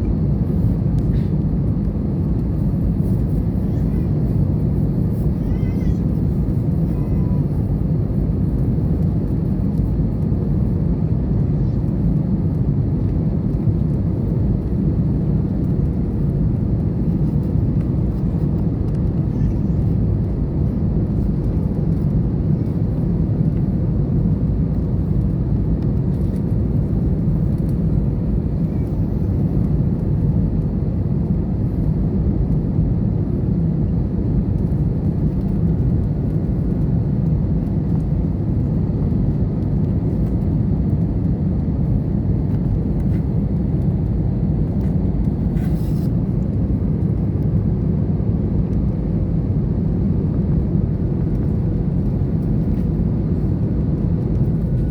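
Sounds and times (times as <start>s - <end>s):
jet engines rumbling: 0.0s - 54.9s
rushing air in cabin: 42.2s - 47.7s, 50.0s - 54.9s.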